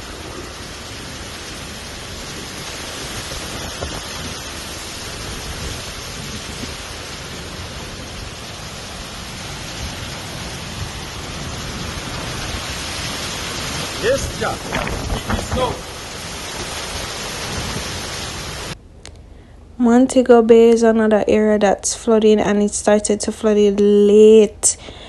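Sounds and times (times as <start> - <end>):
heavy rain: 0.0 - 18.8.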